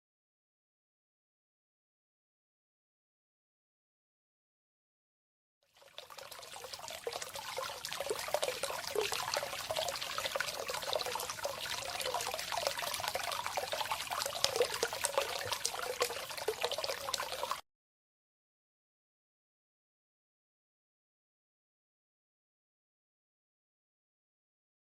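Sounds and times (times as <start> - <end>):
water flowing and trickling: 5.7 - 17.6.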